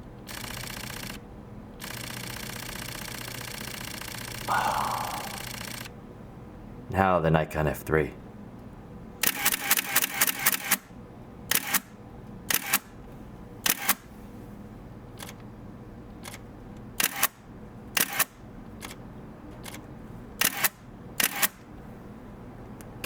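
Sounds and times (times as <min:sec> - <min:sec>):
camera shutter clack with motor drive: 0:01.8 - 0:04.4, 0:09.2 - 0:10.9, 0:11.5 - 0:12.9, 0:13.6 - 0:14.1, 0:17.0 - 0:17.4, 0:18.0 - 0:19.0, 0:20.4 - 0:21.6.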